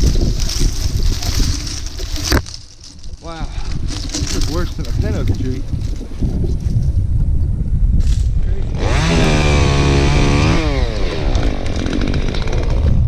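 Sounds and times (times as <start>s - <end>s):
chainsaw revving: 8.7s - 13.0s.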